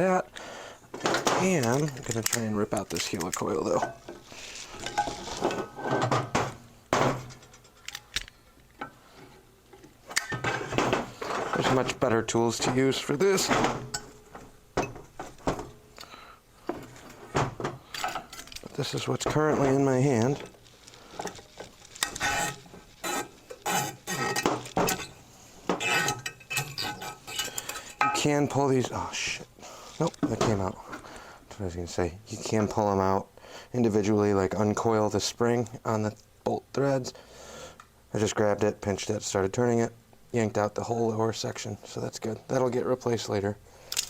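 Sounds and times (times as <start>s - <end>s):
metallic scrapes and clinks: 1.5s - 6.1s, 19.7s - 28.3s
tool scraping metal: 22.0s - 28.3s.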